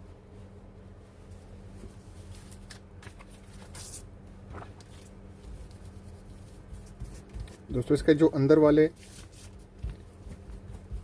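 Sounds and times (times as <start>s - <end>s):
low electrical hum: 0.0s - 11.0s
cloth rubbing keyboard pad: 4.5s - 8.0s, 8.9s - 11.0s.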